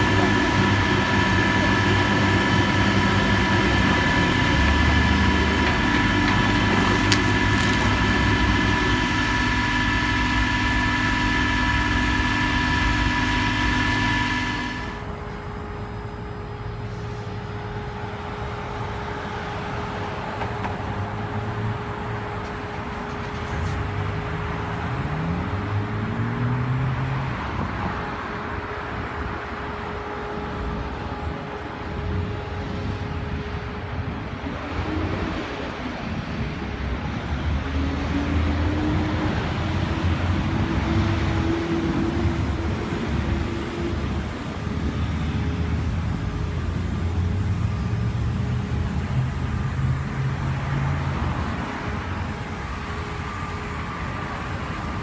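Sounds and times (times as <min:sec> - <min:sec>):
engines revving: 0:00.0 - 0:15.2
steady drone: 0:00.0 - 0:55.0.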